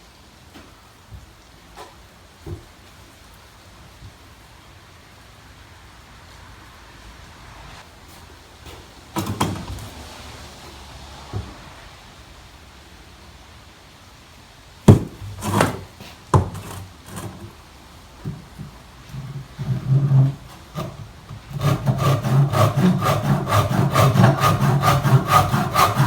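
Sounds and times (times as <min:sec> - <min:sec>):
faint rain hiss: 0:00.0 - 0:21.5
objects knocking on work surface: 0:14.9 - 0:17.5.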